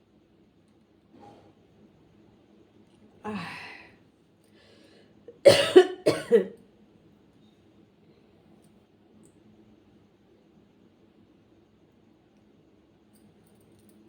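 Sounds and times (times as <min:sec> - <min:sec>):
person exhaling: 0:03.3 - 0:04.0
person coughing: 0:05.3 - 0:06.6.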